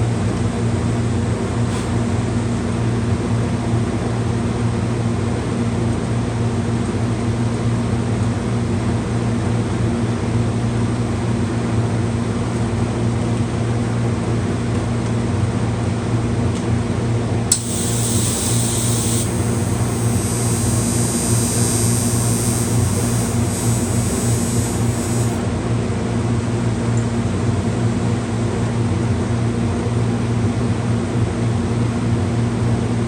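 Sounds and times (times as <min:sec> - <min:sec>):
switch click: 0:17.5 - 0:25.4
electric machine hum: 0:17.5 - 0:25.5
high steady hiss: 0:17.5 - 0:25.5.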